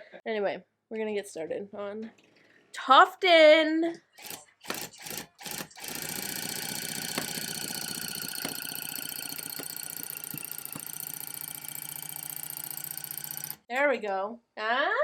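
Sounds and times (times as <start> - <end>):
tufting gun buzzing: 4.2 - 13.7.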